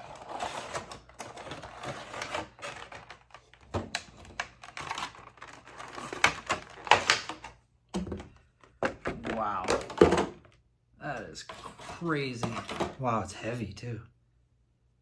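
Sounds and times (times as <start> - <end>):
cardboard and plastic crinkling: 0.0 - 10.6.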